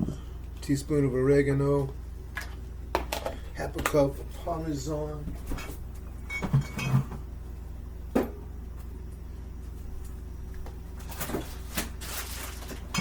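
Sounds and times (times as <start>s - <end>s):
steady low hum: 0.0s - 13.0s
rustling or scraping: 11.0s - 13.0s.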